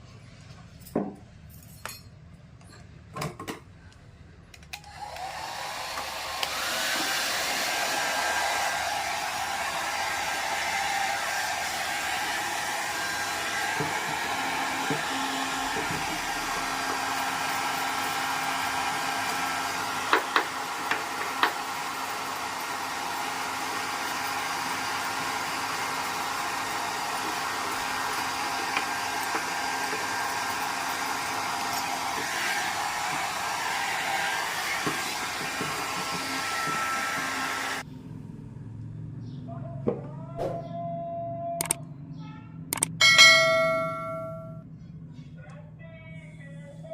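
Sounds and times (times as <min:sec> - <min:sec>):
hair dryer blowing: 0:04.7 - 0:37.9
sharp clicks: 0:41.6 - 0:41.8, 0:42.7 - 0:43.0.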